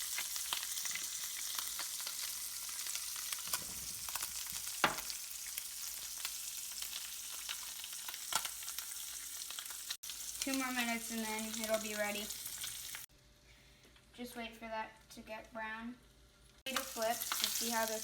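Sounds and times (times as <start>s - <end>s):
fish fillets sizzling in butter: 0.0s - 13.1s, 16.6s - 18.0s
sharp pop from pan: 4.8s - 5.1s.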